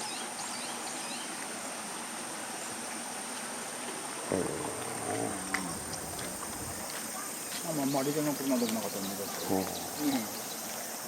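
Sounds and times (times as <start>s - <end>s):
running water rushing: 0.0s - 11.0s
faint voice: 4.3s - 7.5s.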